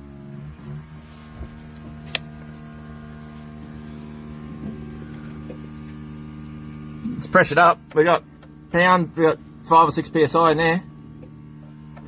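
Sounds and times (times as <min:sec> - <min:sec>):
electric fuel pump humming: 0:00.0 - 0:12.0.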